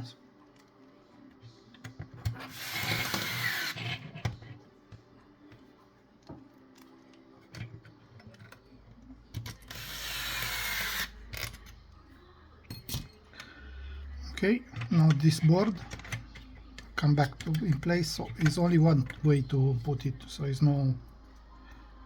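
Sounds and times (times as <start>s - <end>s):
screws and tools clicking: 2.5s - 4.0s, 9.4s - 11.8s
electric screwdriver whirring: 2.5s - 4.1s, 9.6s - 11.5s.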